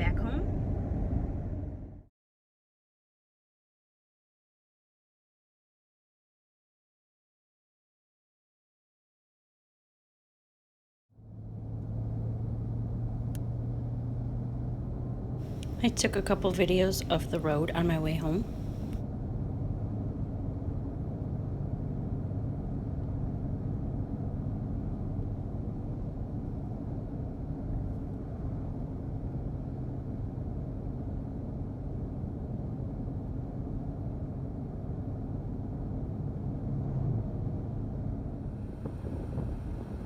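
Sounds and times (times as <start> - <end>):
road rumble inside car: 0.0 - 2.0, 11.2 - 19.0, 33.9 - 40.0
car engine hum: 15.5 - 19.0.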